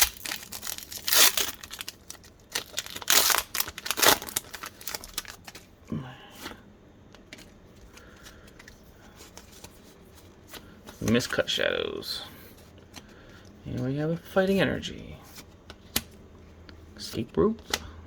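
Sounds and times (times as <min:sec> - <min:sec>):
wrapper tearing: 0:00.0 - 0:05.7
wrapper rustling: 0:00.0 - 0:05.8.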